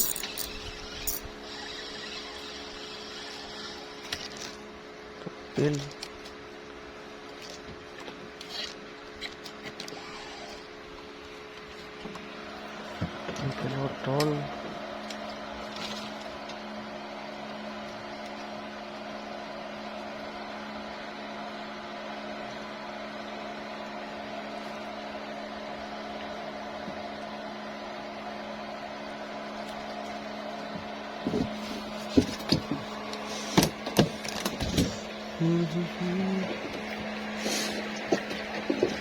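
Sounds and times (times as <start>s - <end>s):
motor humming: 0.0s - 4.9s, 8.4s - 17.1s, 29.2s - 39.0s.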